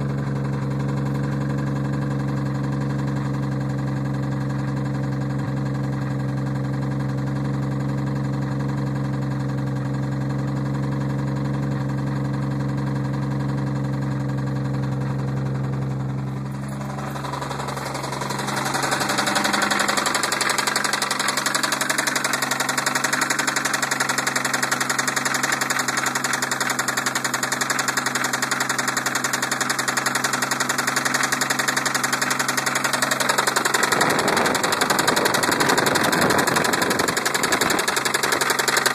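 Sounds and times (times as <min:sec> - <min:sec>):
car engine knocking: 0:00.0 - 0:38.9.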